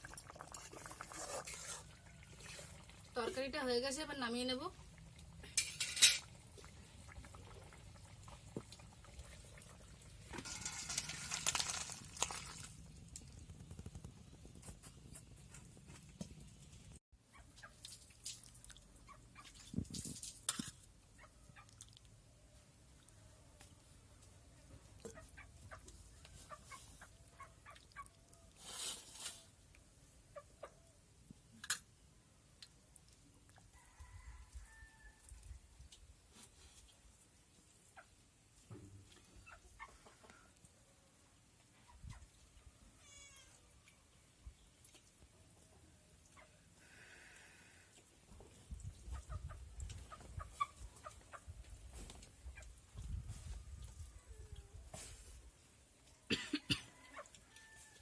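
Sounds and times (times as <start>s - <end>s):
metal pot clinks: 5.6s - 6.3s.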